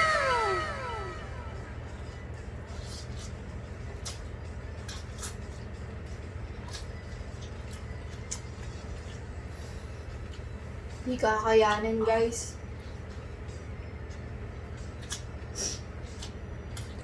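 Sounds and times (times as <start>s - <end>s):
low room hum: 0.0s - 17.0s
people eating noodles: 12.9s - 17.0s.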